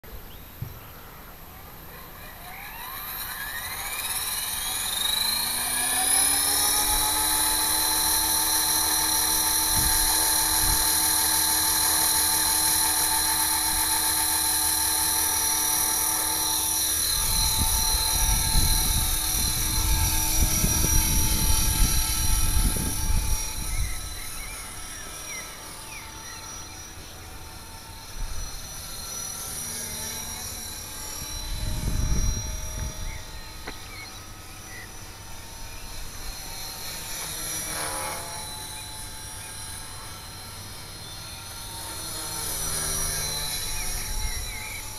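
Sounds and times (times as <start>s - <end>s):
electric helicopter whine: 0.1s - 44.9s.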